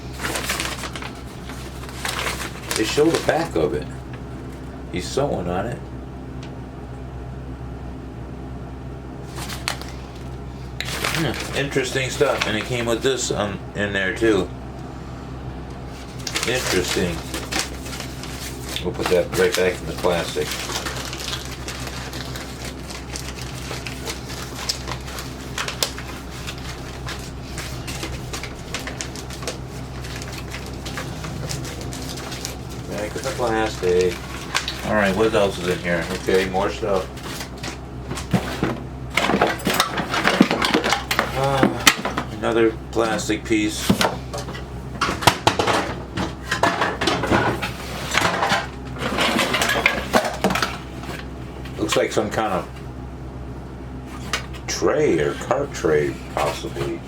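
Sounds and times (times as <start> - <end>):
rustling: 0.0 - 4.2, 15.9 - 42.3
plastic sleeve crinkling: 0.0 - 4.6, 9.2 - 13.0, 15.9 - 44.7
steady low hum: 0.0 - 57.0.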